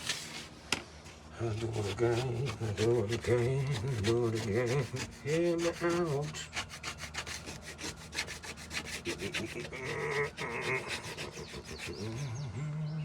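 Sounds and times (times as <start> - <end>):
hand tool rubbing body filler: 1.5 - 12.3.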